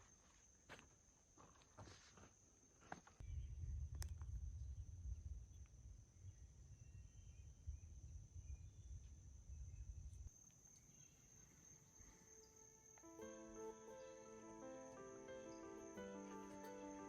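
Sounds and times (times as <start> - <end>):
wind rumble on microphone: 3.2 - 10.3
insects trilling: 9.7 - 17.0.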